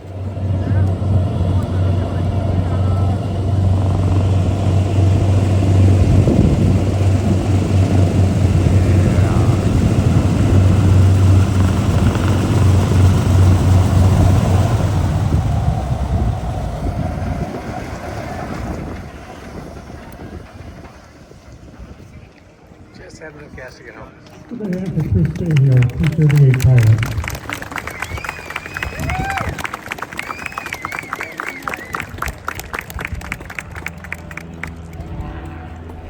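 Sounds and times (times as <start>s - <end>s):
aircraft engine drone: 0.0s - 22.0s, 24.4s - 36.0s
wind noise on microphone: 0.0s - 22.4s, 24.8s - 30.1s.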